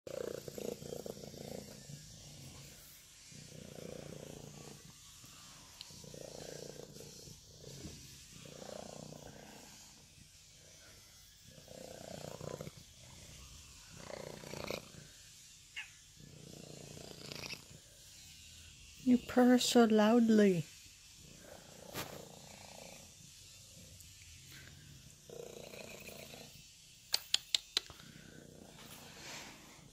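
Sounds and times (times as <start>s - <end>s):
kitten purring: 0.1s - 15.2s, 15.8s - 17.9s, 25.1s - 29.9s.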